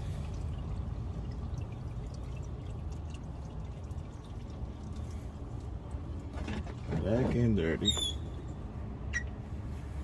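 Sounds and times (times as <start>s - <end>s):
oil pouring: 0.0s - 7.6s.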